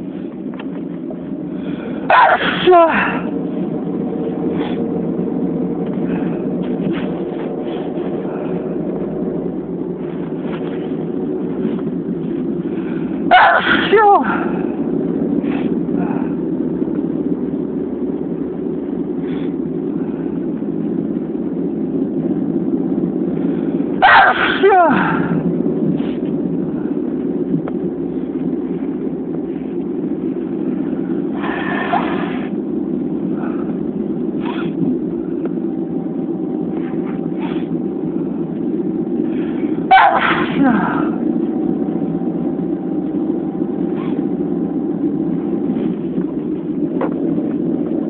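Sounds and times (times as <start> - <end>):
low background rumble: 0.0 - 48.0
person sneezing: 2.1 - 3.3, 13.3 - 14.4, 39.9 - 41.1.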